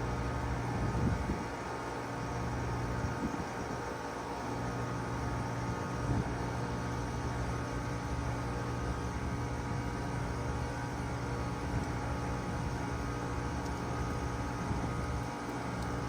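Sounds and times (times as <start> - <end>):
heat pump humming and hissing: 0.0 - 16.0.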